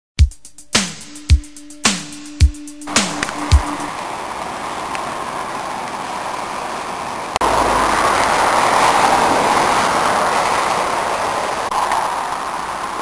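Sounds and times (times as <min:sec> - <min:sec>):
river rushing water roar: 0:02.9 - 0:13.0.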